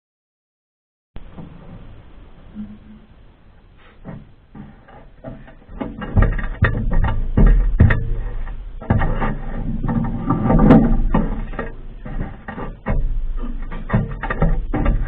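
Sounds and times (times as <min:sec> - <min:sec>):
heavy thumps: 0:01.2 - 0:15.0
objects knocking and clattering: 0:04.0 - 0:15.0.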